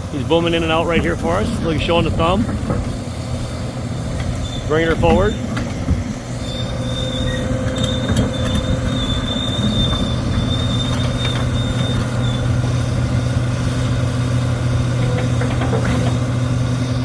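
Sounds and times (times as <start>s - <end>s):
excavator diesel engine running: 0.0s - 17.0s
thin high squeal: 6.4s - 12.6s.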